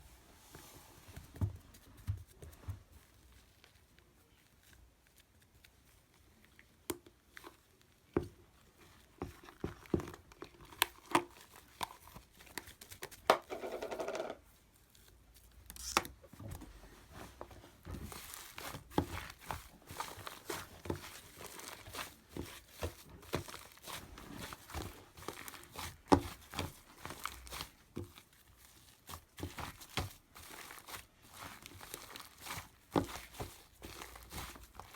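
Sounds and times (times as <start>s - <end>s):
shaving foam squishing: 17.1s - 34.9s.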